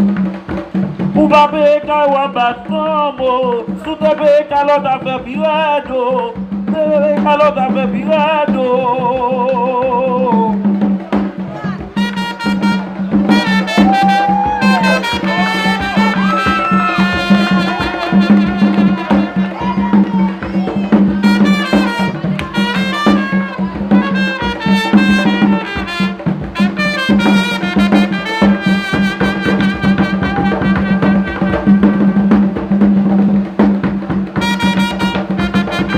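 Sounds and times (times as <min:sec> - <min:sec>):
drums: 0:00.0 - 0:35.9
brass section playing: 0:11.0 - 0:35.9.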